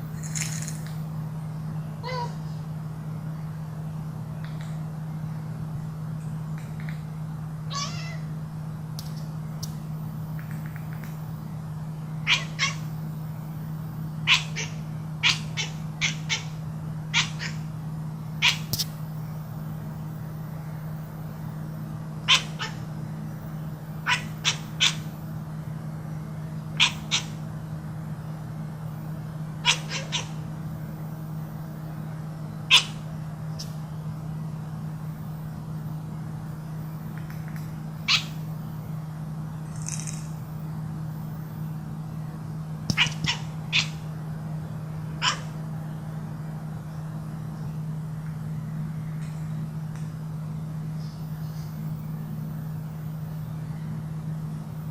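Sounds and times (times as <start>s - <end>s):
steady low hum: 0.0s - 54.9s
cat giving short sharp calls: 43.0s - 44.0s.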